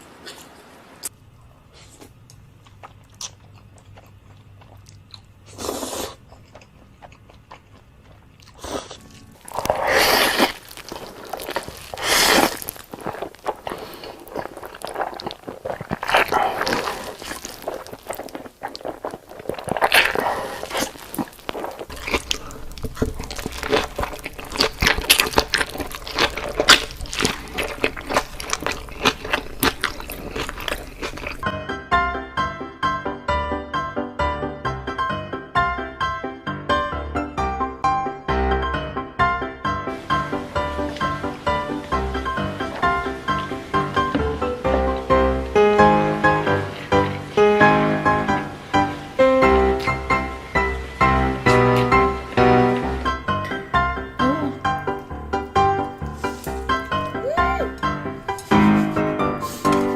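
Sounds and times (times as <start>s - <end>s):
low steady hum: 0.0s - 31.5s
food crunching: 1.8s - 31.4s, 51.5s - 59.9s
wet chewing: 1.8s - 31.4s, 51.5s - 59.9s.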